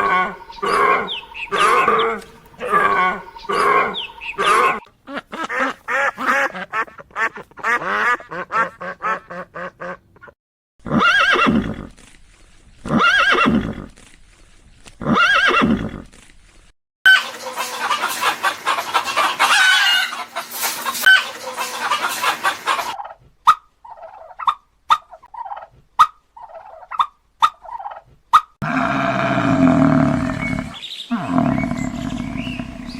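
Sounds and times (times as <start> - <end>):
animal calls: 0.0 - 6.8, 28.6 - 32.9.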